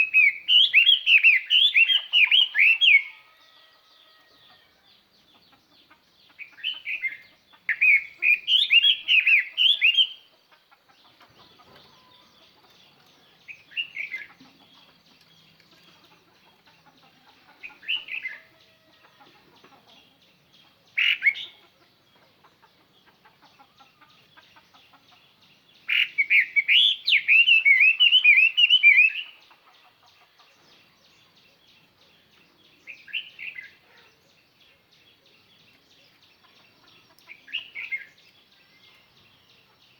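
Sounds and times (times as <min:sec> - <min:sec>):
songbird warbling: 0:06.3 - 0:10.3, 0:21.0 - 0:21.7, 0:25.8 - 0:29.5, 0:35.6 - 0:39.6.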